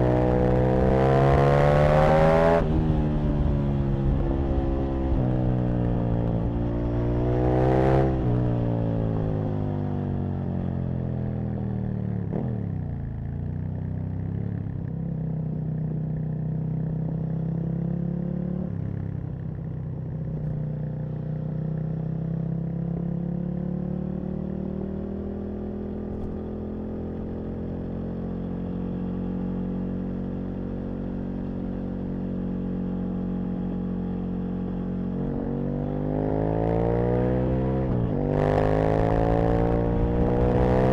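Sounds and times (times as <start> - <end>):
motorcycle engine revving: 0.0 - 9.4, 17.5 - 40.9.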